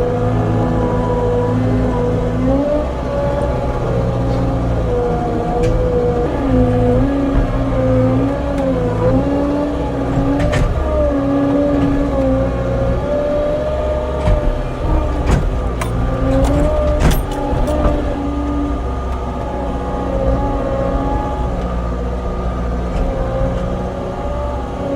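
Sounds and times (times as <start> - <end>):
skid steer engine running: 0.0 - 24.9
sharp knocks: 14.1 - 18.2.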